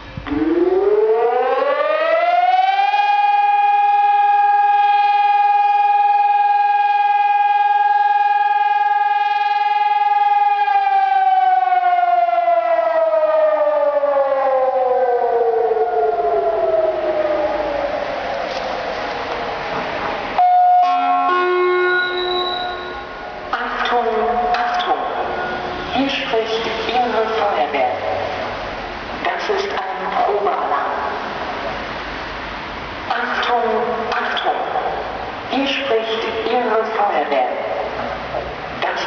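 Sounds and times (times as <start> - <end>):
civil defence siren wailing: 0.0 - 28.9.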